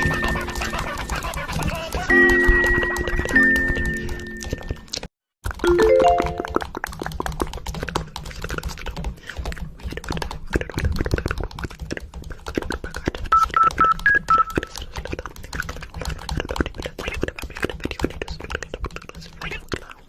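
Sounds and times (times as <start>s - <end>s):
rapid irregular clicking: 0.0s - 5.7s, 6.5s - 20.0s
phone startup beeps: 5.7s - 6.6s, 13.4s - 14.7s.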